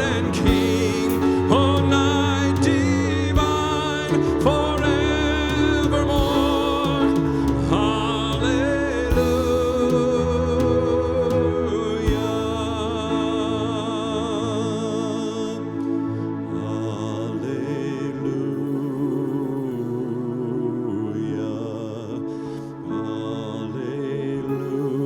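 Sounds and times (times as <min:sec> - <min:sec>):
person singing long notes: 0:00.0 - 0:25.0
sustained low accompaniment: 0:00.0 - 0:25.0
soft low beat: 0:00.4 - 0:12.7.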